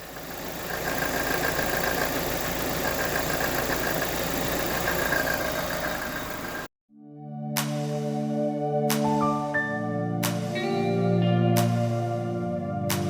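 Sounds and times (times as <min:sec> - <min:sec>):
car engine idling: 0:00.0 - 0:06.7.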